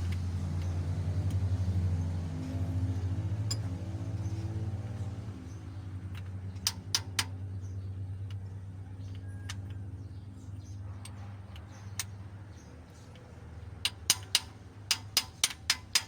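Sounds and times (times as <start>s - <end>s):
sharp metal clicks and taps: 0.0s - 1.5s, 3.4s - 3.8s, 6.0s - 7.5s, 10.5s - 16.0s.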